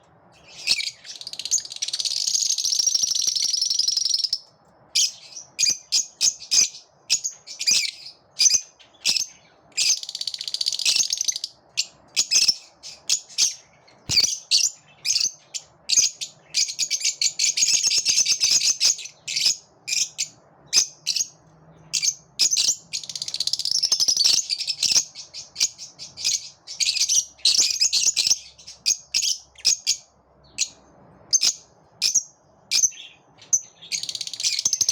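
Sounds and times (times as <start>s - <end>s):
lovebirds chirping: 0.0s - 34.9s.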